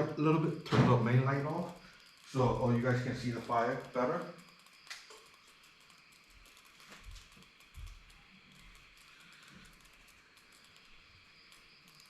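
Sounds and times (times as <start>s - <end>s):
click: 3.4s - 12.0s.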